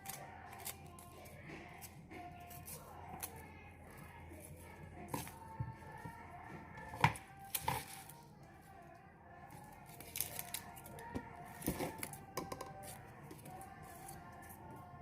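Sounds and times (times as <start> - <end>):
faint background music: 0.0 - 15.0
clicks and knocks of objects handled: 6.8 - 8.2, 9.9 - 14.6.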